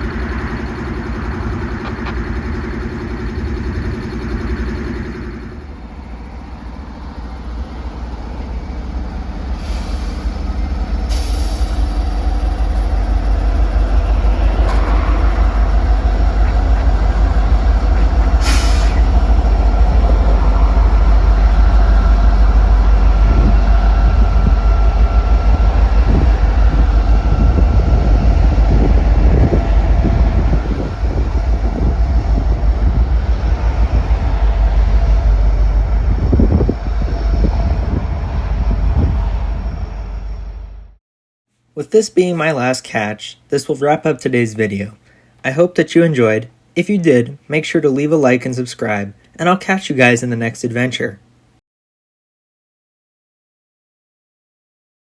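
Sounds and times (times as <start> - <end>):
diesel locomotive engines: 0.0 - 41.0, 41.8 - 45.6
train rumble: 0.0 - 41.0
short hisses: 9.5 - 12.9, 18.4 - 19.3.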